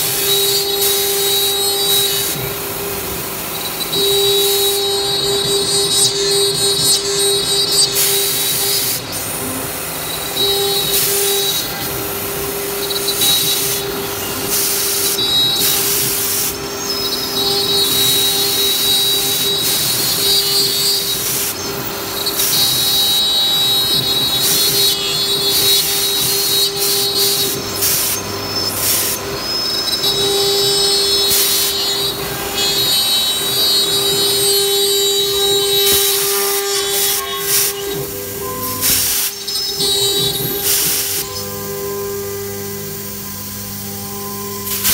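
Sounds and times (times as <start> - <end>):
hissing cutting noise: 0.0 - 44.9
router spindle whining: 0.0 - 44.9.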